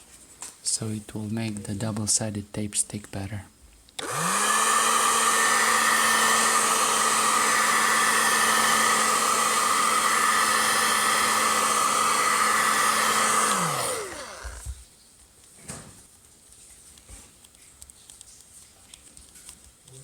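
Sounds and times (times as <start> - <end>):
hot-air blower running: 4.0 - 14.8
motor winding down: 4.0 - 14.8.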